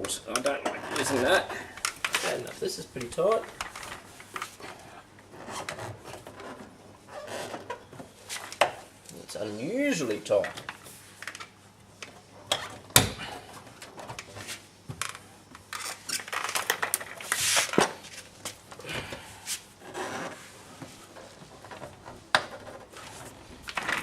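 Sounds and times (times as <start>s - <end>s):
plastic scraping and rubbing: 19.8s - 24.0s.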